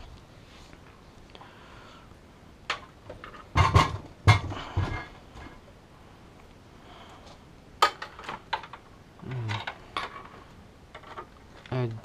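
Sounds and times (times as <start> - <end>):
low voice hum: 9.2 - 9.8.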